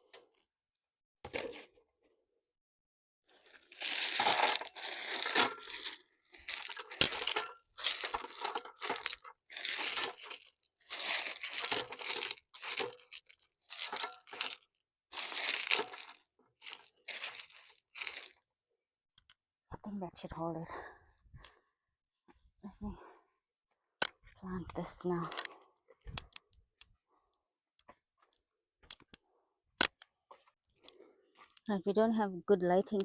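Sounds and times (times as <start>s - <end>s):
rocks and soil scraping: 3.3s - 18.4s.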